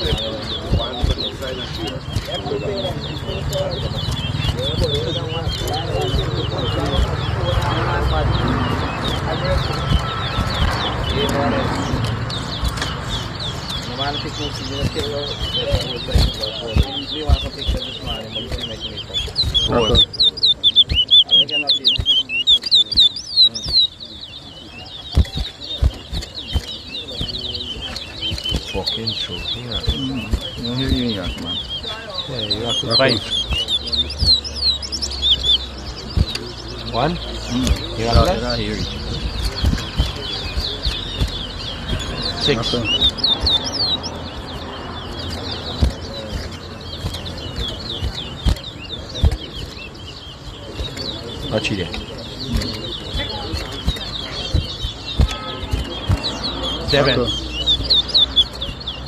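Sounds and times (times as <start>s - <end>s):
finch whistling song: 0.0s - 59.0s
dull thumps: 3.4s - 20.2s, 37.6s - 59.0s
sharp knocks: 50.8s - 59.0s.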